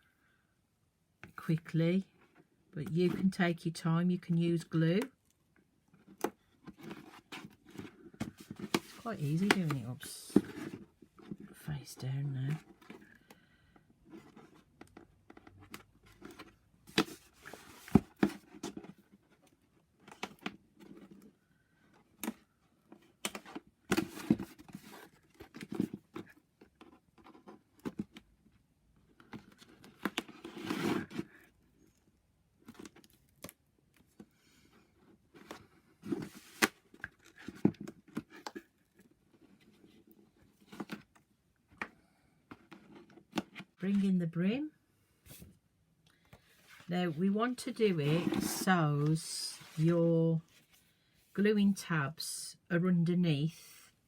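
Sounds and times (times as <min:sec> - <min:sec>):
card being moved and pressed: 0:08.8 - 0:10.0.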